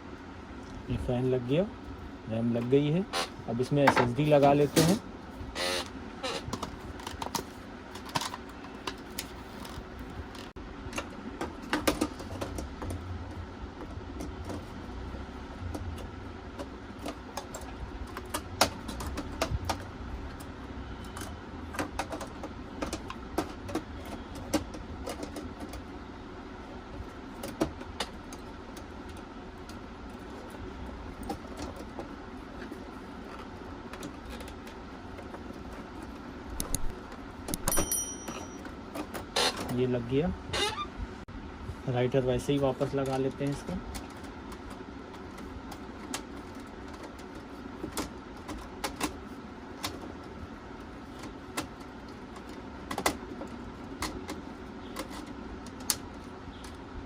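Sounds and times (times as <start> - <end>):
hands handling computer parts: 2.6 - 13.0.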